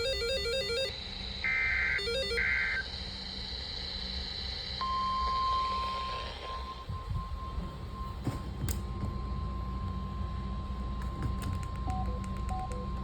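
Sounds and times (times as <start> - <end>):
harsh buzzing data warble: 0.0 - 8.2
steady warning alarm tone: 0.0 - 13.0.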